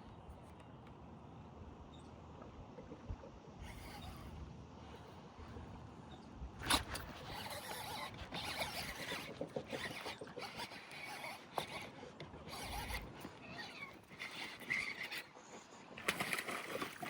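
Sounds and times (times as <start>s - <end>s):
fishing reel buzzing and ratcheting: 3.6s - 5.1s, 6.6s - 15.4s, 16.0s - 17.0s.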